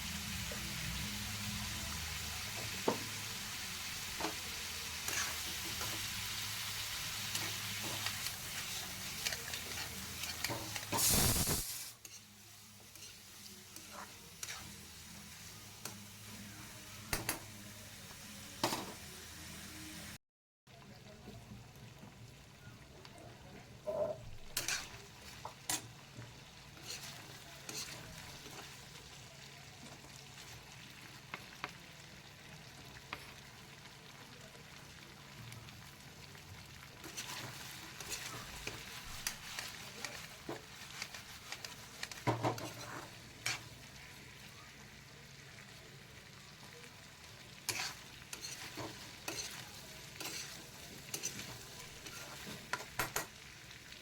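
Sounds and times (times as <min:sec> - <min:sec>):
chicken sizzling in a pan: 0:00.0 - 0:54.0
spatula scraping and clinking on pan: 0:12.9 - 0:13.2, 0:23.9 - 0:25.0, 0:26.8 - 0:28.1, 0:40.5 - 0:43.7, 0:47.7 - 0:53.3.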